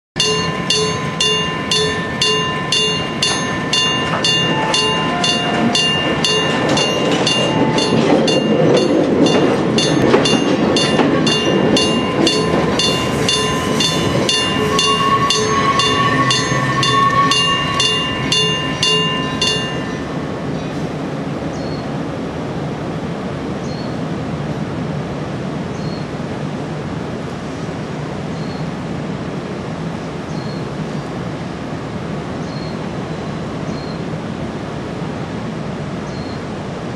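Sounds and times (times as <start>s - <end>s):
level crossing alarm ringing: 0.2s - 20.4s
train rumbling: 0.2s - 36.9s.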